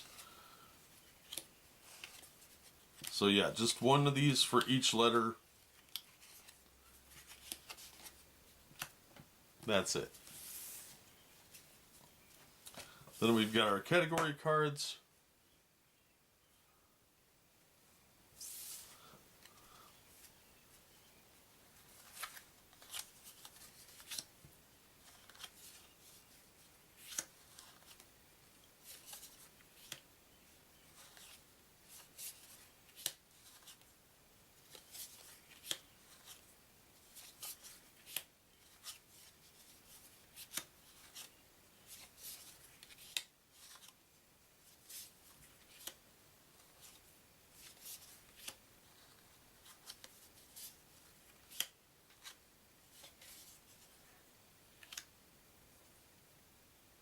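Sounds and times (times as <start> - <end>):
paper cards flicking and tapping: 1.2 - 3.2, 5.8 - 9.3, 21.9 - 24.3, 25.0 - 25.9, 27.0 - 28.1, 31.0 - 33.9, 34.6 - 36.4, 37.1 - 39.3, 40.0 - 44.0, 44.9 - 46.0, 47.6 - 52.4, 54.8 - 55.1.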